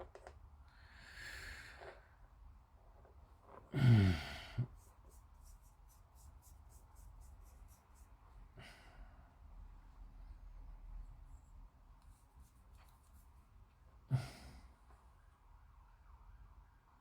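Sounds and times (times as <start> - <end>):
man sighing: 3.7 - 4.7, 14.1 - 14.7
light scratching on plastic: 11.1 - 13.6.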